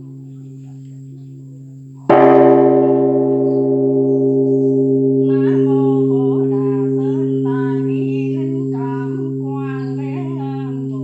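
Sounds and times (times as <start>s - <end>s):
voice chanting: 5.3s - 11.0s.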